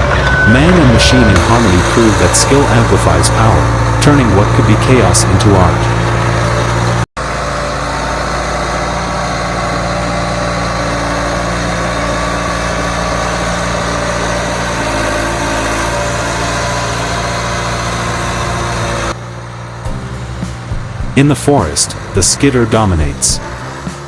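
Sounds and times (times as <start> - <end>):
heavy machine engine running: 0.0 - 24.0.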